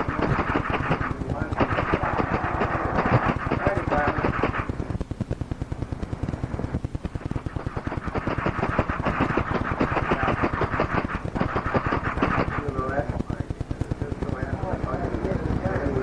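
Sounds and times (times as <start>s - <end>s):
machine clattering clicks: 0.0s - 4.7s.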